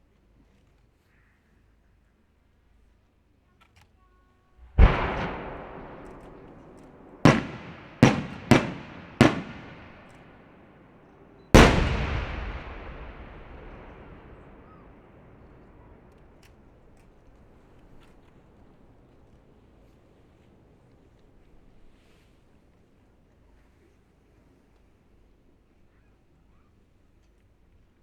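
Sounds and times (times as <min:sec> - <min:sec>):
firework shells bursting: 0:04.6 - 0:10.4, 0:11.6 - 0:15.6.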